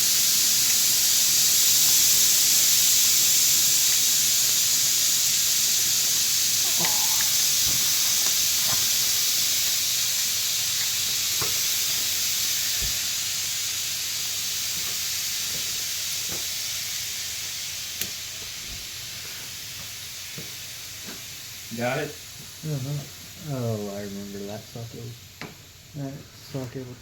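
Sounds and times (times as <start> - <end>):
compressed air hissing: 0.0 - 27.0.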